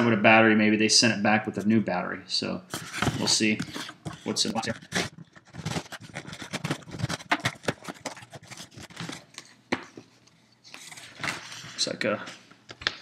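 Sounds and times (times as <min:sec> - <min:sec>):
cardboard box being opened: 0:02.7 - 0:09.4.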